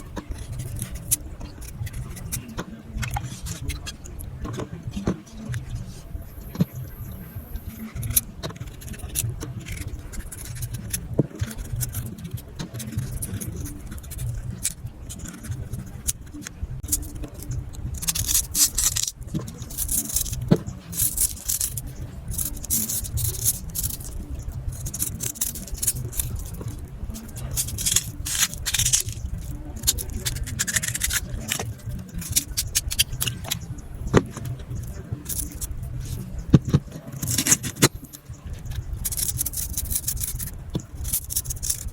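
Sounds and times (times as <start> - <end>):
knife scraping pumpkin skin: 7.4 - 38.2.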